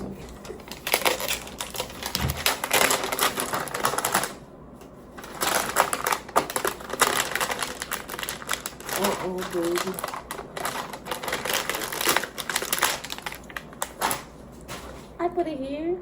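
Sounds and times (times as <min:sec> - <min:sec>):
packaging crackling and clicking: 0:00.3 - 0:04.4, 0:05.2 - 0:14.3.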